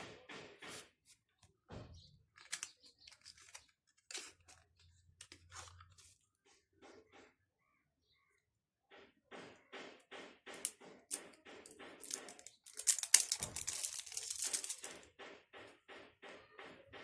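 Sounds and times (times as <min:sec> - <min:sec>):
plastic crackling and tearing: 0:02.4 - 0:06.1, 0:11.1 - 0:15.0
plastic packaging rustling: 0:12.0 - 0:15.0.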